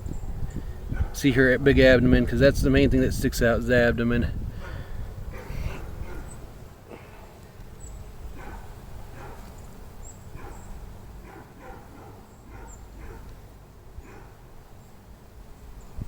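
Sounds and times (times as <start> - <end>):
wind rumble on microphone: 0.0 - 6.5.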